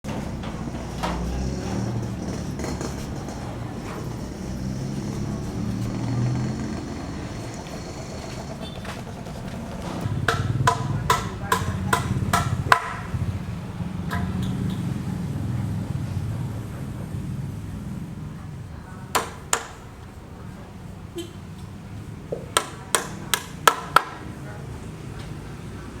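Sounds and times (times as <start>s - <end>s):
sharp knocks with ring: 10.0s - 13.1s.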